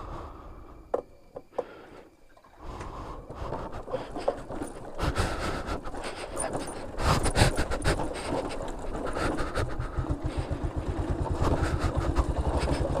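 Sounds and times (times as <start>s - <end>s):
wind and road noise: 2.8s - 13.0s
motorcycle engine running: 6.4s - 13.0s.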